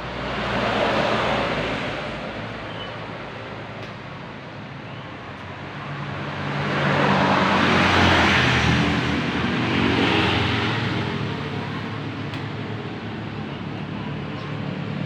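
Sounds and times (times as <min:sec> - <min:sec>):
steady traffic noise: 0:00.0 - 0:15.0
vehicle passing by: 0:06.2 - 0:12.0.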